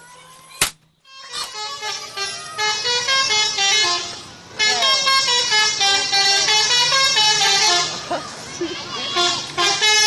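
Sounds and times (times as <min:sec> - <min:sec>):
multi-tone bus horn melody: 0:01.0 - 0:10.0.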